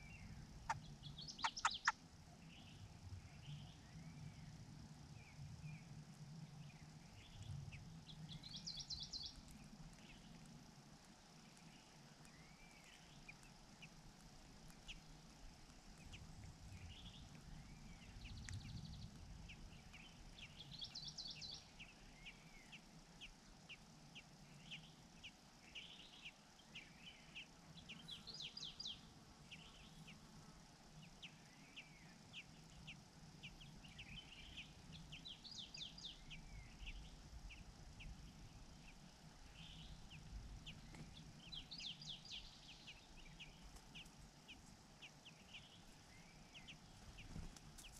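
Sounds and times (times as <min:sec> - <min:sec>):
birds chirping: 0:00.0 - 0:02.8, 0:06.6 - 0:47.9
low background hum: 0:00.0 - 0:47.9
bird call notes: 0:00.7 - 0:02.0.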